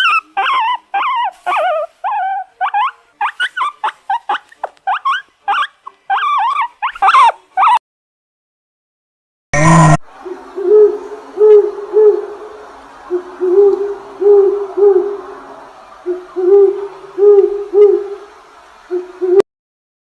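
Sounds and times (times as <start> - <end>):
bird hooting: 10.2 - 12.5, 13.1 - 15.2, 16.0 - 18.3, 18.9 - 19.4.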